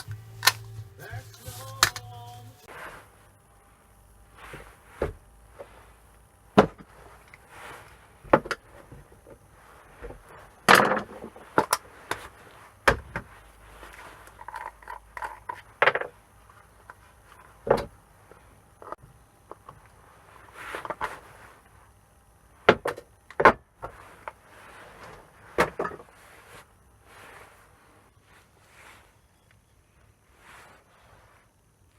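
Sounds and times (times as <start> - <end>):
rustling and scraping: 0.0 - 3.1, 19.6 - 21.8, 23.8 - 31.7.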